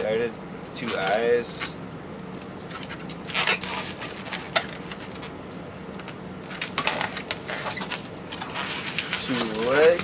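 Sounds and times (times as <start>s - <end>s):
balloon rubber rubbing: 2.9s - 5.2s, 6.7s - 10.0s.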